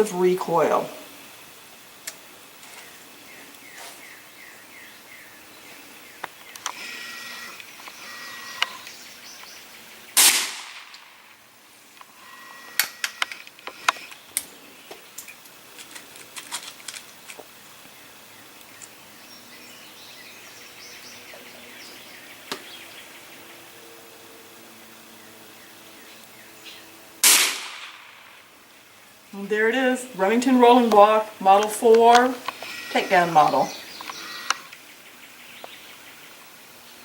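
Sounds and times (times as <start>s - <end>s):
rifle shot: 10.2s - 11.2s, 27.2s - 28.4s.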